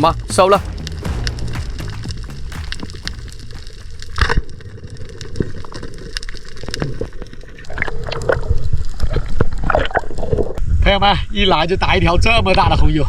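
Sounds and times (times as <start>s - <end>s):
sharp knock: 0.5s - 3.9s
small underwater clicks and crackles: 3.3s - 10.6s.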